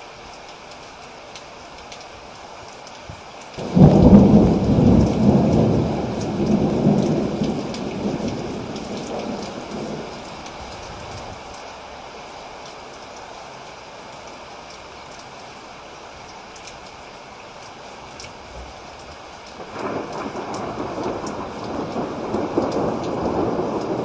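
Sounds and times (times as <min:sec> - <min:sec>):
steady rain falling: 0:00.0 - 0:24.0
thunder clap rolling: 0:03.6 - 0:10.1, 0:19.6 - 0:24.0.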